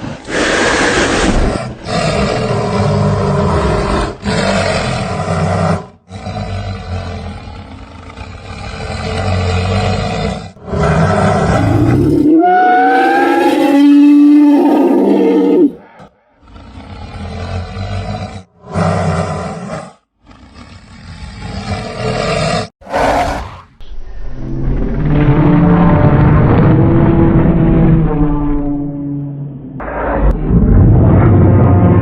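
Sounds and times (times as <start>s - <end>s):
creature roar: 0.0s - 23.8s
rasping growls: 0.0s - 23.8s.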